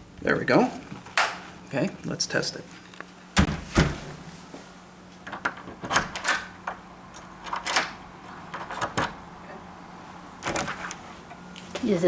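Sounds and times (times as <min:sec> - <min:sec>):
deadbolt clicks and clunks: 0:01.1 - 0:01.4, 0:03.4 - 0:04.2, 0:05.2 - 0:09.2, 0:10.4 - 0:11.0.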